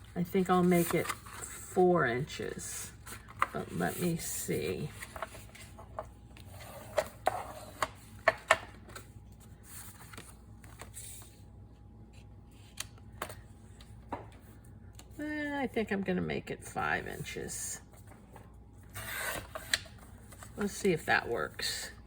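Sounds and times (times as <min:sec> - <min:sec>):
paper rustling: 0:00.2 - 0:07.1, 0:08.9 - 0:11.4.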